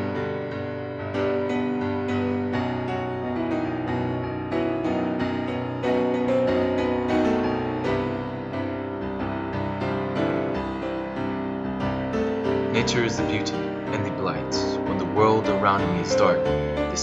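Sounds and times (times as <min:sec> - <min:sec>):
slow piano music: 0:00.0 - 0:17.0.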